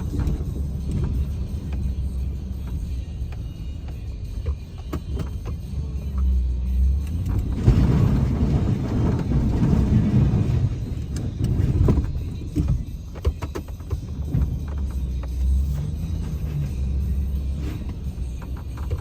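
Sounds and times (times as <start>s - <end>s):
vehicle engine humming: 0.0s - 19.0s
rough scraping rumble: 6.9s - 13.0s, 14.1s - 19.0s.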